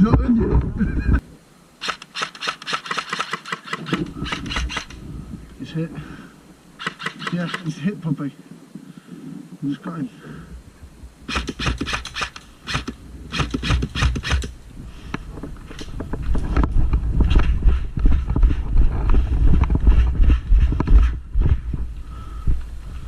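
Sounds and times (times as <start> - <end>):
microphone movement rumble: 0.0 - 1.3, 4.0 - 6.4, 14.5 - 23.0
rapid clicks: 1.8 - 5.0, 6.8 - 7.7
quick footsteps: 15.2 - 22.7.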